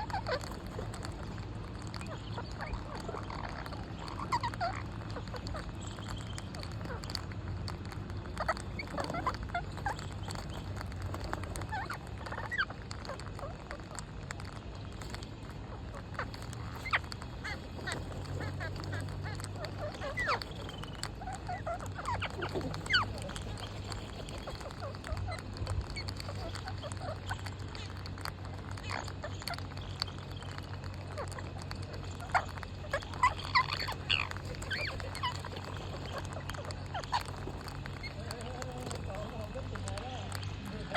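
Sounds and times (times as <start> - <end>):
parrots chirping and squawking: 0.0 - 40.9.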